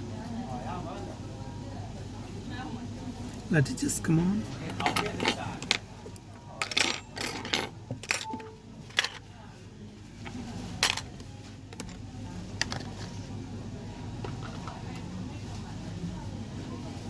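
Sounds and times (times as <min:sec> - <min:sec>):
metallic clicks and clinks: 0:06.6 - 0:09.2
low steady hum: 0:06.7 - 0:09.2.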